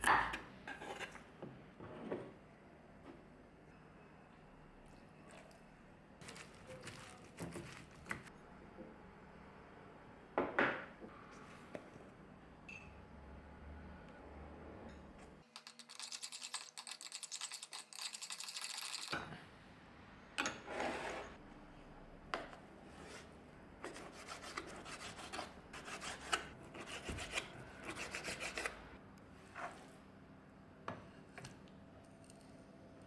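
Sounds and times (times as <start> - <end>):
rubbing and scraping food by hand: 6.2 - 8.3.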